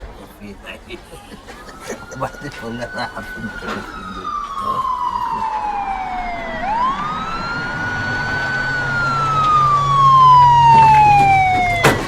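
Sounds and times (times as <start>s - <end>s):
police car siren wailing: 1.0s - 12.0s
low hum: 4.2s - 11.8s.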